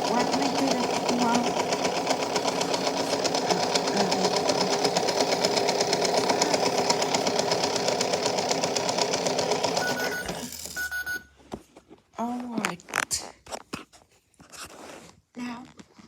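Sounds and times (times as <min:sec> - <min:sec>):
small motor rattling: 0:00.0 - 0:11.2.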